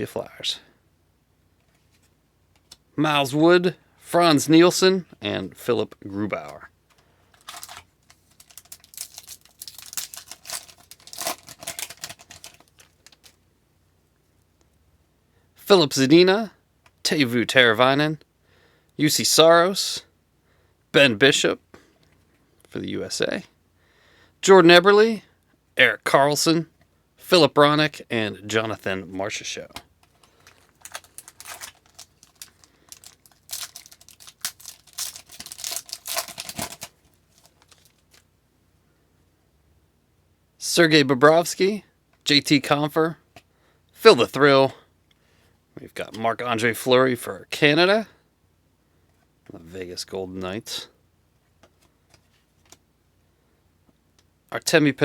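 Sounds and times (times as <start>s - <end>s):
cards rustling and clicking: 7.3s - 13.4s, 29.7s - 38.2s, 51.6s - 52.8s
foil wrapper crinkling and tearing: 7.3s - 13.4s, 30.0s - 38.2s.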